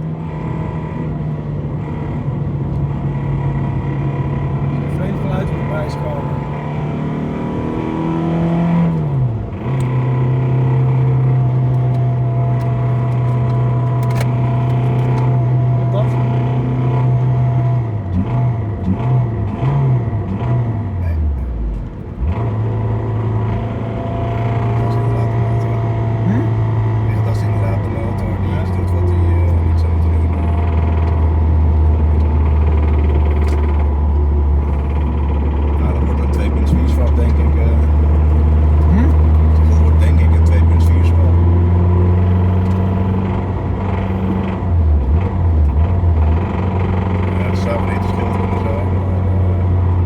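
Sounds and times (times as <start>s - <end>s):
car engine droning: 0.0s - 50.0s
road and wind noise: 0.0s - 50.0s.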